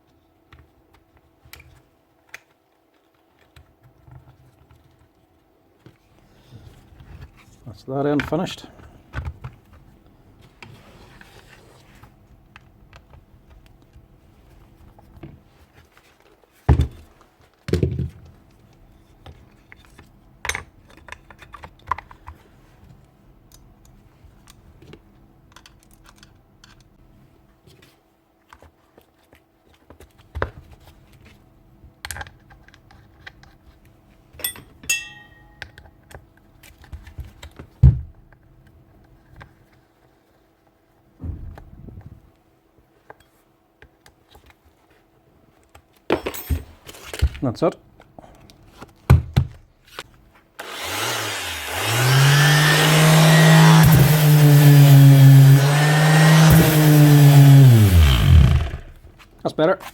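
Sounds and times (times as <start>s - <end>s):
plastic parts clicking and tapping: 23.5s - 26.9s, 32.0s - 33.8s.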